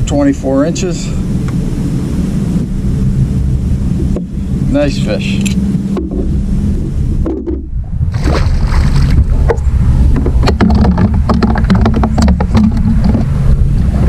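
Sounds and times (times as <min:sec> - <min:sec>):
wind rumbling on microphone: 0:00.0 - 0:14.0
sharp clicks and knocks: 0:09.5 - 0:13.3.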